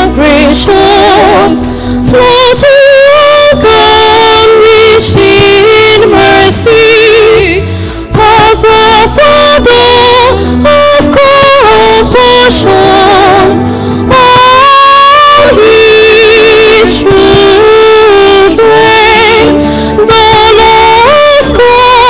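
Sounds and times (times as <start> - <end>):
sustained instrumental accompaniment: 0.0 - 22.0
woman singing a psalm: 0.0 - 22.0.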